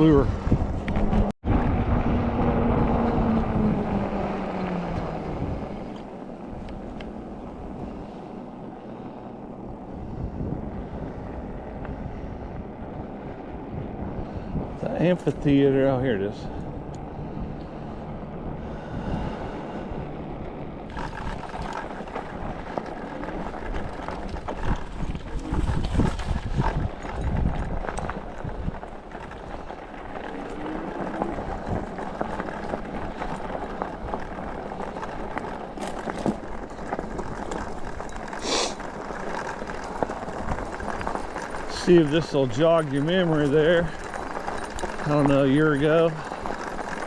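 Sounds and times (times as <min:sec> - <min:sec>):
wind on microphone: 0:00.0 - 0:06.9, 0:08.9 - 0:35.1
tyre noise: 0:00.0 - 0:47.0.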